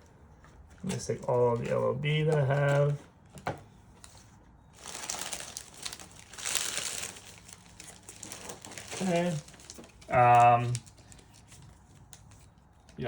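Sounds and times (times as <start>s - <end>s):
foil wrappers crinkling: 0.8s - 3.0s, 4.0s - 13.0s.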